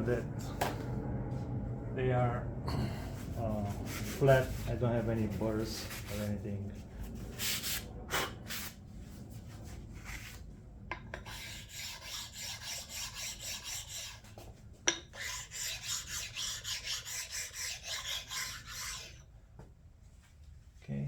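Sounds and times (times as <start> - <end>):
stone rubbing on cast iron: 11.2 - 19.2.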